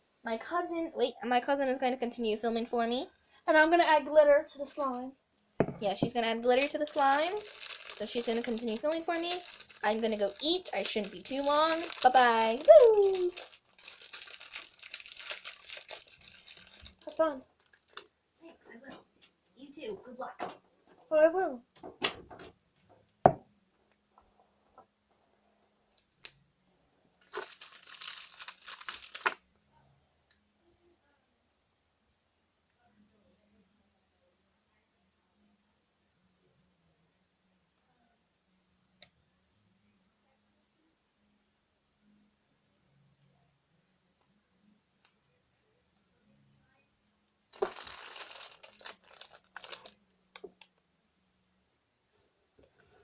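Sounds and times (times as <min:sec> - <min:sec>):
wrapping crinkling and tearing: 0:06.4 - 0:18.1, 0:27.2 - 0:29.4, 0:47.5 - 0:50.7.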